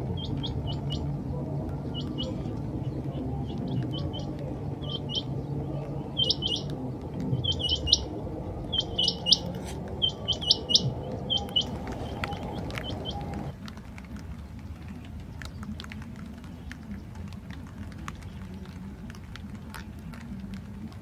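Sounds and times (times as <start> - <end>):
quail calling: 0.0 - 13.5
steady low noise: 0.0 - 13.6.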